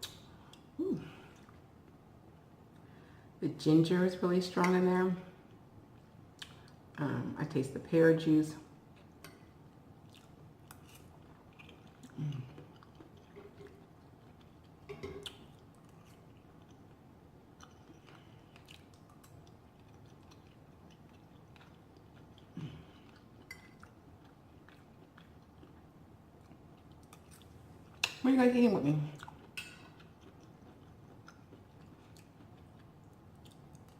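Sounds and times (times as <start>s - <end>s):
person chewing food: 5.5s - 6.8s, 8.9s - 28.1s, 29.2s - 33.9s.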